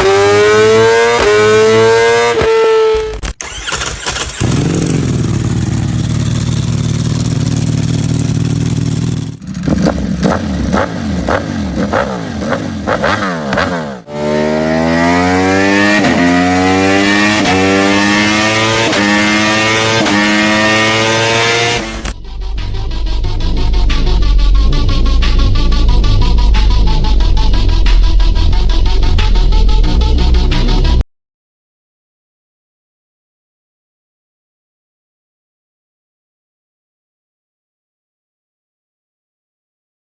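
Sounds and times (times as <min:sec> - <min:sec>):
motorcycle accelerating through gears: 0:00.0 - 0:22.2
motorcycle exhaust running: 0:04.4 - 0:18.2.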